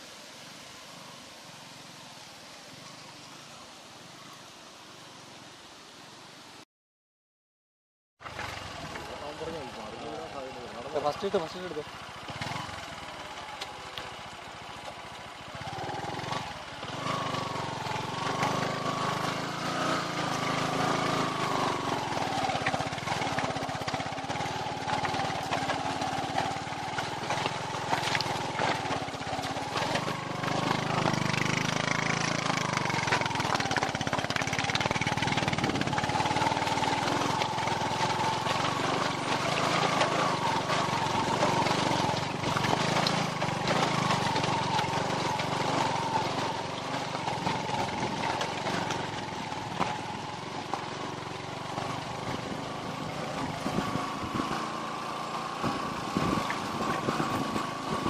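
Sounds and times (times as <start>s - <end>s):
vehicle engine pulling in low gear: 8.2s - 58.0s.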